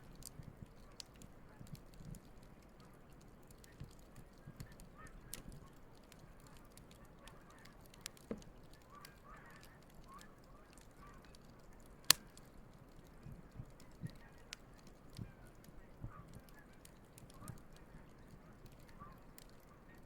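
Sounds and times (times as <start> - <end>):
campfire crackling and popping: 0.0 - 20.0
distant geese honking: 8.8 - 11.3.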